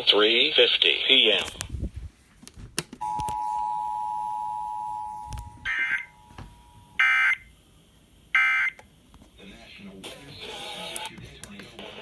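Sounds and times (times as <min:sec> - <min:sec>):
two-tone alert alarm: 0:03.0 - 0:07.4.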